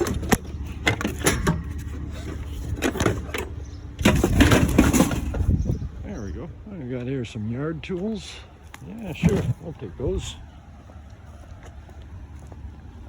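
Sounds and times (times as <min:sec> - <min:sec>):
loud rattling clatter: 0:00.0 - 0:05.9
scrap metal knocks and clunks: 0:00.0 - 0:05.9.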